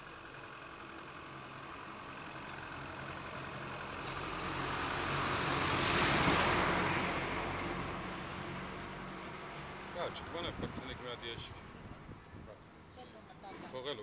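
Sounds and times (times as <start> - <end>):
vehicle passing: 1.2 - 12.4.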